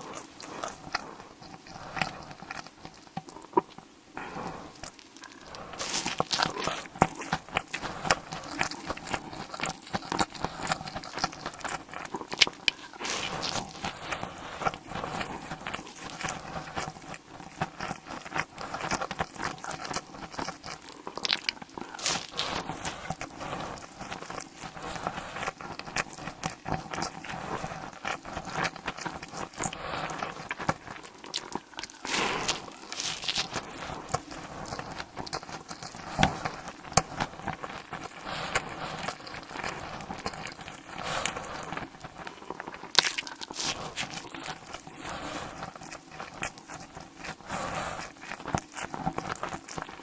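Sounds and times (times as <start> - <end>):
person chewing crunchy food: 0.0 - 50.0.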